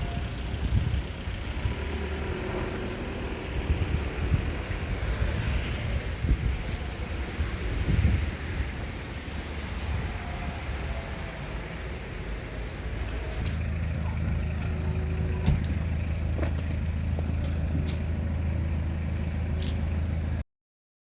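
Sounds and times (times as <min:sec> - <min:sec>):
vehicle engine rumble: 0:00.0 - 0:20.4.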